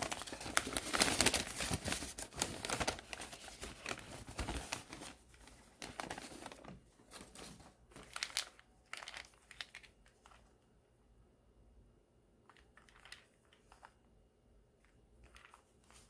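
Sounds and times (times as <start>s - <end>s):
packaging crinkling and rustling: 0.0s - 10.5s.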